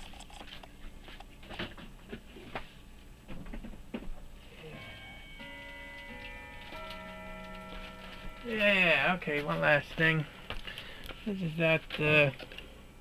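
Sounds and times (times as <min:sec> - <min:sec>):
sustained musical tones: 0:04.6 - 0:11.6.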